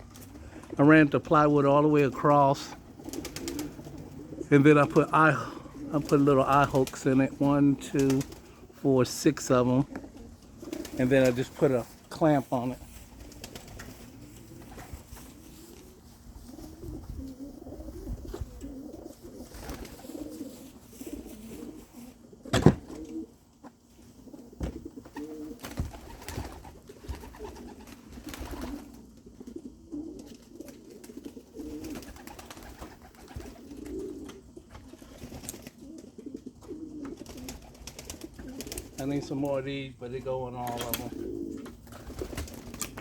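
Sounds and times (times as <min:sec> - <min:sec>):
pigeons cooing: 0:00.0 - 0:43.0.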